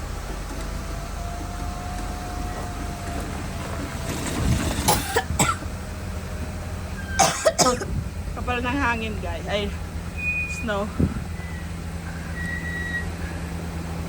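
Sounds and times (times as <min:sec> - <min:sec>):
wind on microphone: 0:02.3 - 0:05.4, 0:07.8 - 0:08.7, 0:10.0 - 0:11.8
person coughing: 0:04.9 - 0:05.6, 0:07.2 - 0:07.9.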